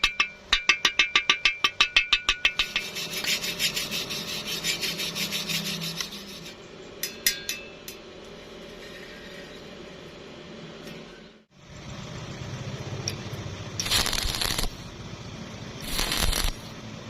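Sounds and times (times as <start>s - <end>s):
ringing taps on steel: 0.0s - 2.7s, 7.0s - 8.0s
scraping on metal: 2.6s - 6.6s, 8.4s - 10.0s.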